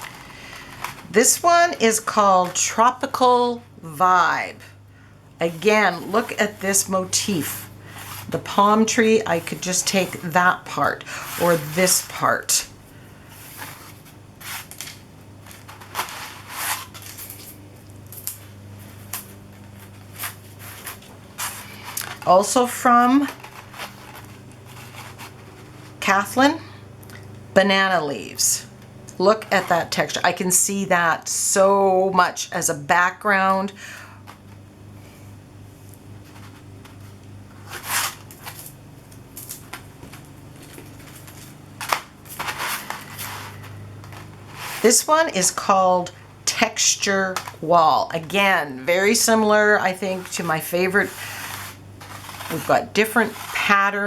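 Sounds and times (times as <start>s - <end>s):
plastic sheets rustling: 0.0s - 3.2s, 5.4s - 26.0s, 35.9s - 45.4s, 47.1s - 54.0s
low steady hum: 0.0s - 54.0s.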